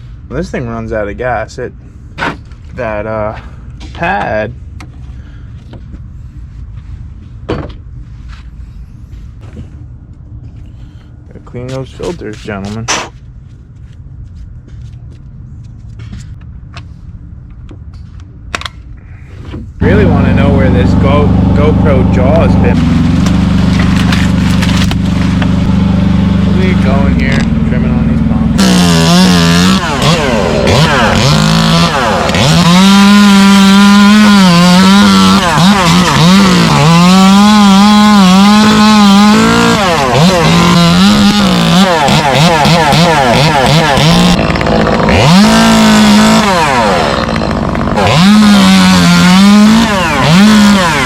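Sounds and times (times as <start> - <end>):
engine running low rumble: 0.0 - 32.4
chainsaw cutting at high revs: 19.8 - 51.0.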